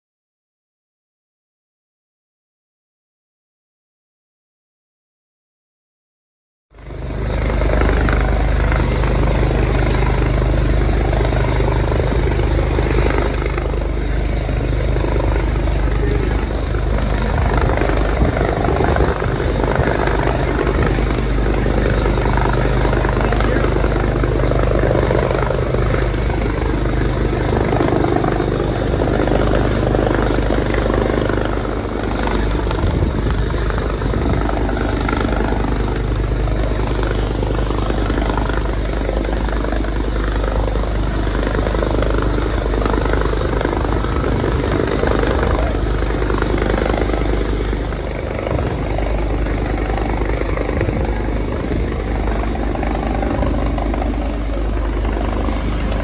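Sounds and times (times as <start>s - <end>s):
helicopter rotor and engine: 6.7s - 56.0s.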